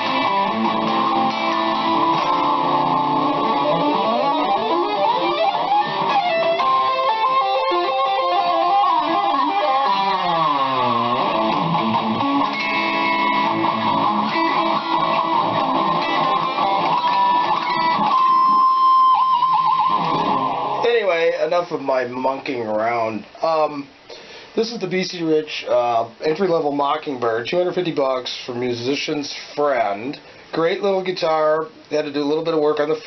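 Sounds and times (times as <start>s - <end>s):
distorted electric guitar: 0.0s - 21.4s.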